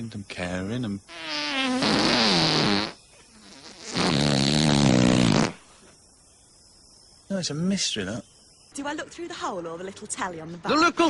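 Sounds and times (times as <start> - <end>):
loud buzzing fart sounds: 1.1 - 5.7.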